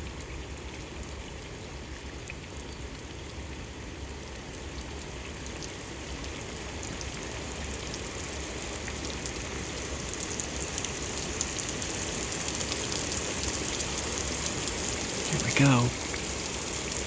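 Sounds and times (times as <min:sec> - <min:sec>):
steady rain hiss: 0:08.6 - 0:17.0.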